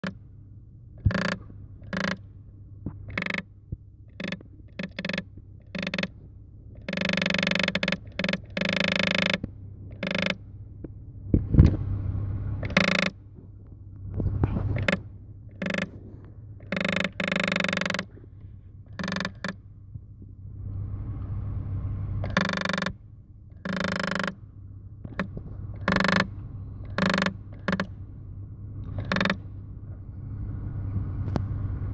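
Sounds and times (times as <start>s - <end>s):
small geared motor clicking and grinding: 1.0s - 2.3s, 3.0s - 3.5s, 4.1s - 10.4s, 12.6s - 13.2s, 14.2s - 18.3s, 18.9s - 19.6s, 22.2s - 24.4s, 25.0s - 28.0s, 28.8s - 29.5s.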